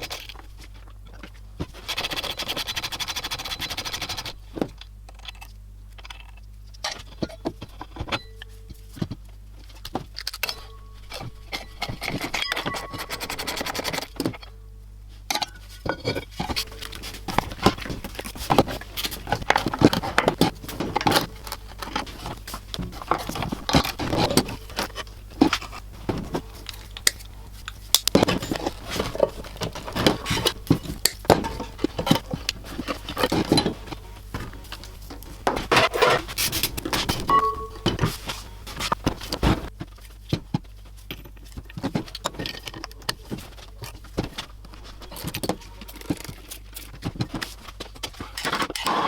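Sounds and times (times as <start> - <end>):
metal tools clinking and scraping: 6.8 - 14.6, 15.2 - 39.7.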